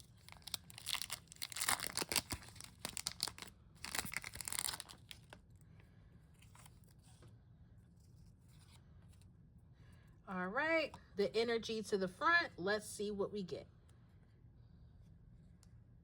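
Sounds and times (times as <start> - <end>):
foil wrapper tearing and crinkling: 0.0 - 5.4.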